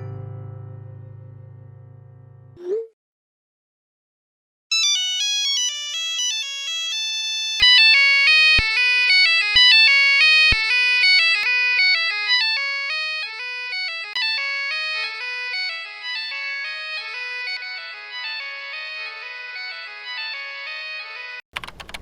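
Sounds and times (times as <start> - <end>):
synthesized ringtone melody: 4.7 - 21.2.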